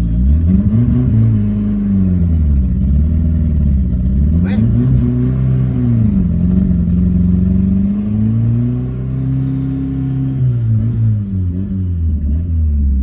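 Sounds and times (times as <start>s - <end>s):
car engine running: 0.0s - 9.0s.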